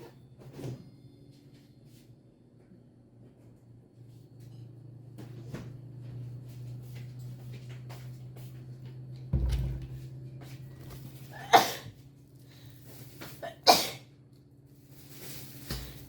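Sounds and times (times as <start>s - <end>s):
low bump: 9.4s - 10.3s.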